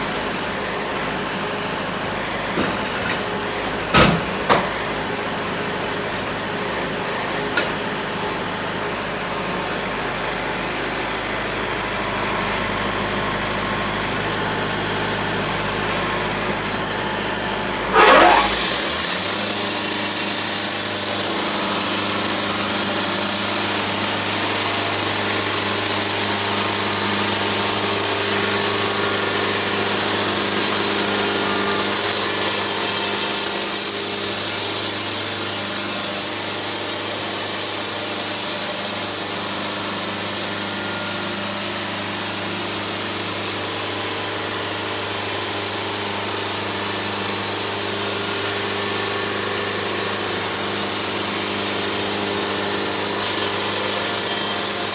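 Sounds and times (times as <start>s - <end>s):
sawmill engine humming: 0.0s - 54.9s
saw blade cutting log: 17.9s - 54.9s.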